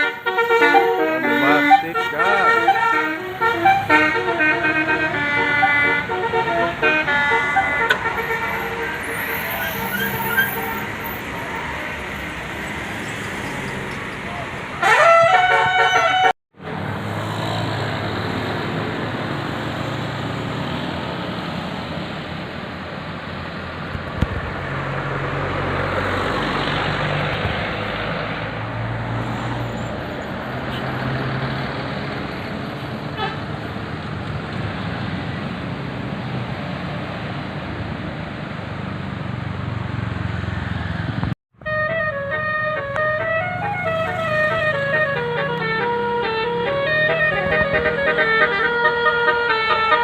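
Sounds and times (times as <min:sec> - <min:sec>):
musical bus horn rising notes: 0:00.0 - 0:16.4, 0:41.6 - 0:50.0
road traffic noise: 0:00.0 - 0:50.0.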